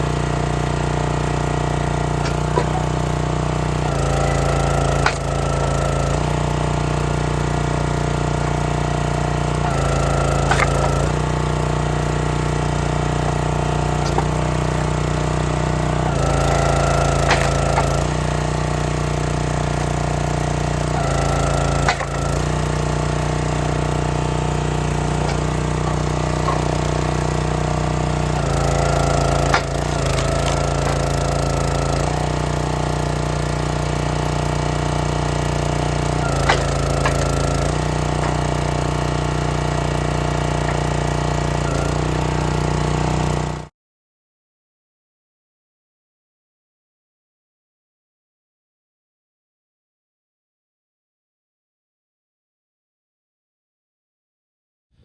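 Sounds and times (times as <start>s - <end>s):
log splitter engine running: 0.0s - 43.7s
wood cracking: 13.2s - 18.6s, 19.6s - 32.8s.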